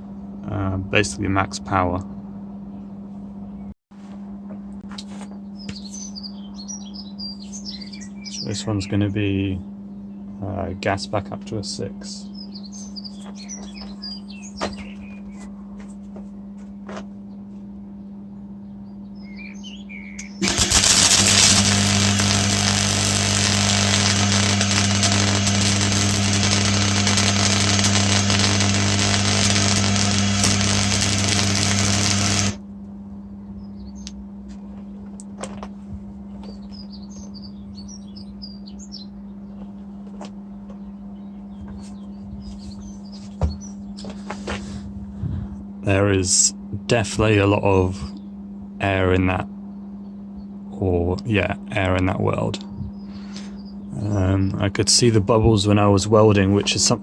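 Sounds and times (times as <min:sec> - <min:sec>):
birds chirping: 0:05.2 - 0:16.6, 0:17.2 - 0:32.6, 0:33.2 - 0:35.2, 0:36.1 - 0:44.4, 0:47.7 - 0:57.0
low hum: 0:14.0 - 0:42.9
welder arc crackling: 0:20.2 - 0:32.6.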